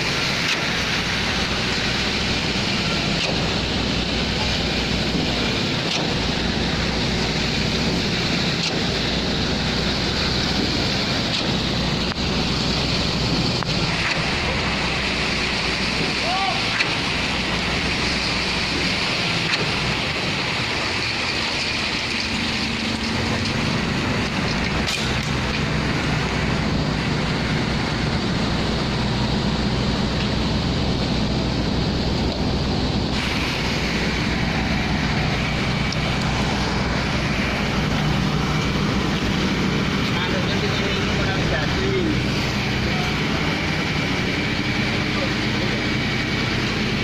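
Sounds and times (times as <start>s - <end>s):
construction machinery engine droning: 0.0s - 47.0s
hiss: 33.1s - 38.9s.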